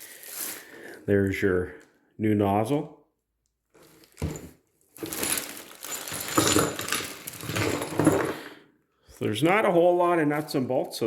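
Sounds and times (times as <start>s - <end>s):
nuts and bolts rattling: 4.2s - 8.4s.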